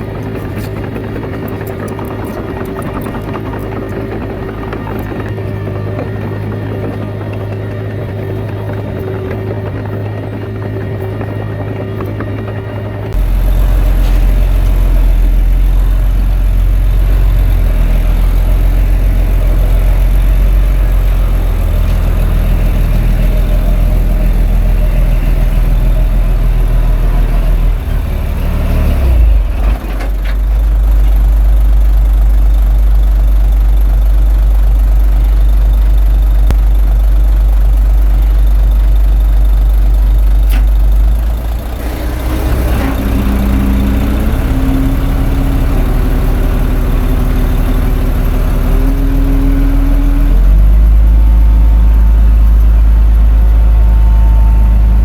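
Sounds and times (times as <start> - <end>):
bulldozer diesel engine running: 0.0 - 55.0.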